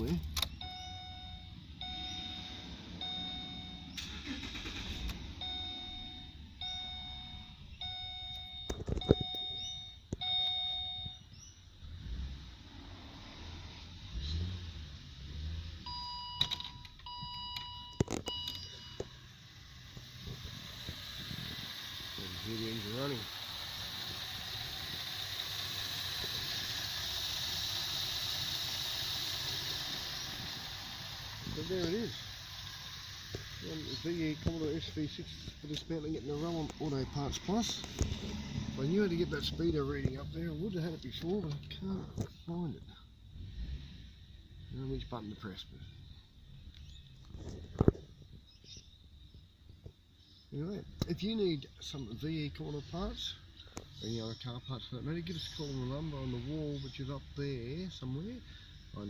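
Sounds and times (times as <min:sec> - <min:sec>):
sharp clicks: 0:00.0 - 0:00.8
dashboard warning chime: 0:00.0 - 0:11.5, 0:15.8 - 0:19.3
car engine idling: 0:00.0 - 0:14.2, 0:14.8 - 0:59.0.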